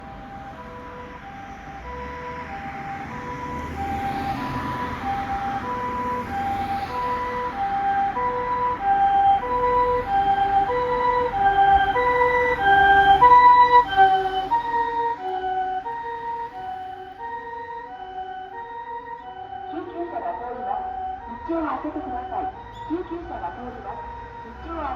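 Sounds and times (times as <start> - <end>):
two-tone ambulance siren: 0.0 - 24.9
vehicle engine and tyre noise: 0.0 - 24.9.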